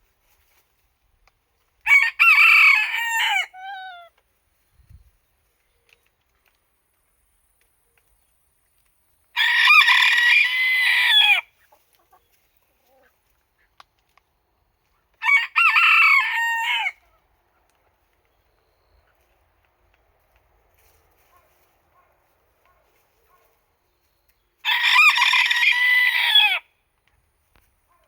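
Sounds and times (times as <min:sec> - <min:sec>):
rooster crowing: 0:01.9 - 0:04.0, 0:09.4 - 0:11.5, 0:15.2 - 0:17.0, 0:24.6 - 0:26.6.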